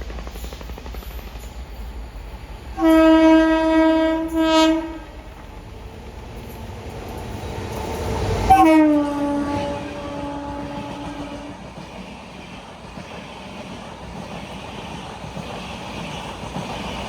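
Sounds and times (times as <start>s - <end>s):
train running noise: 0.0s - 17.0s
locomotive horn blast: 2.8s - 5.2s, 8.5s - 11.6s.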